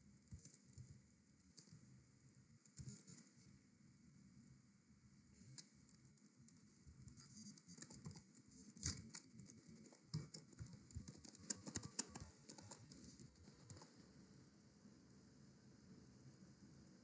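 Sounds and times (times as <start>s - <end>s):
typing on computer keyboard: 7.5s - 13.9s.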